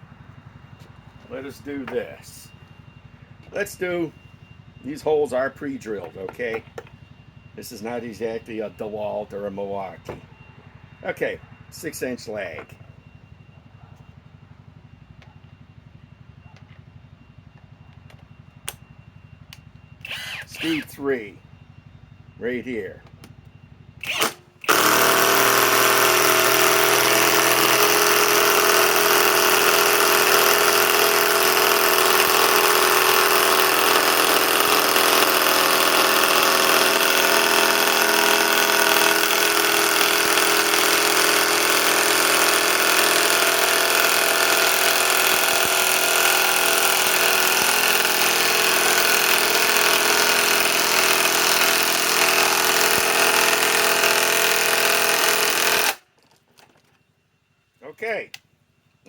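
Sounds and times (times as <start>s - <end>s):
impact wrench hammering: 24.0s - 56.0s.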